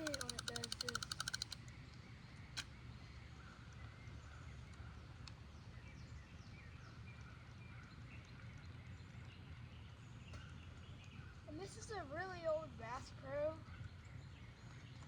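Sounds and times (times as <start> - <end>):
faint bird calls and chirps: 0.0 - 1.6.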